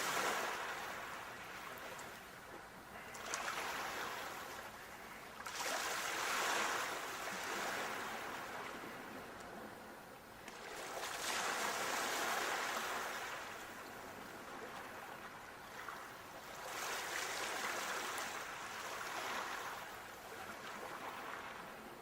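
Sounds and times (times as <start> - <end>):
sea waves washing onto shore: 0.0 - 2.2, 3.0 - 9.4, 10.5 - 15.9.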